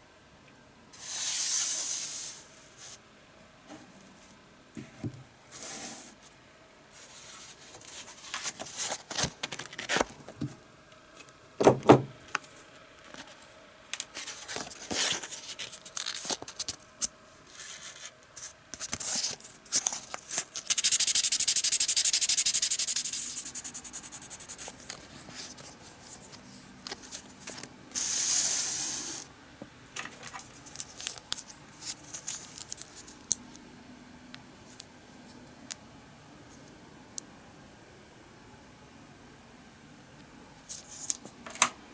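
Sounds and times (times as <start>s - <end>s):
loud steady hiss: 0.9s - 3.0s, 20.4s - 24.6s, 27.9s - 29.4s.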